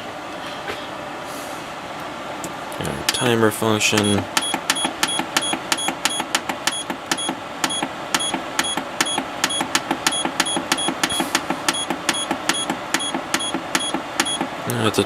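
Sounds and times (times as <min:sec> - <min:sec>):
short high beeps: 0:04.0 - 0:14.4
rapid even clicking: 0:04.0 - 0:14.5.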